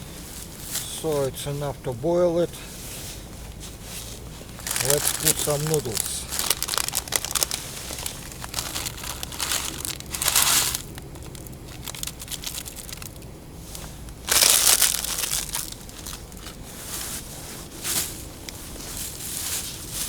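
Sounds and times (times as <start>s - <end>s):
plastic packet crinkling: 4.4s - 16.6s
loud plastic crackling burst: 4.5s - 16.6s.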